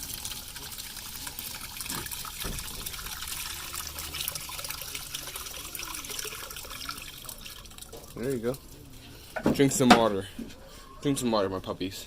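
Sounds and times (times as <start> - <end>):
water trickling into a container: 0.0 - 9.3.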